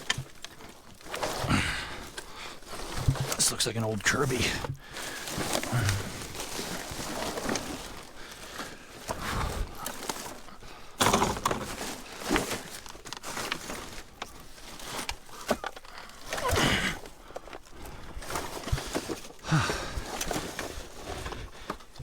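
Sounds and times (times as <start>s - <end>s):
rustling and scraping: 0.0s - 22.0s
hard items knocking and clattering: 11.0s - 14.0s.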